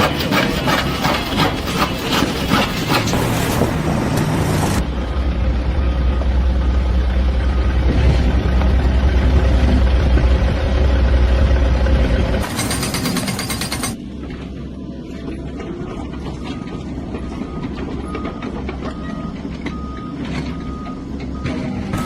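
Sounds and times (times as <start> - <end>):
heavy vehicle engine running: 0.2 - 22.0
reversing alarm beeps: 16.3 - 22.0.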